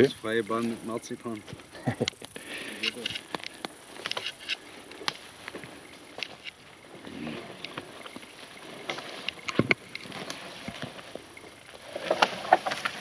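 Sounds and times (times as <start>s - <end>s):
rustling of firewood: 0.0s - 13.0s
dry twigs snapping and crackling: 2.0s - 6.6s, 11.9s - 13.0s.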